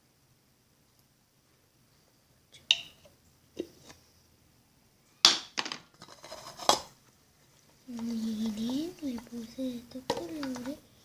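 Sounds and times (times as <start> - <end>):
small bottles clicking and knocking: 10.0 - 10.8.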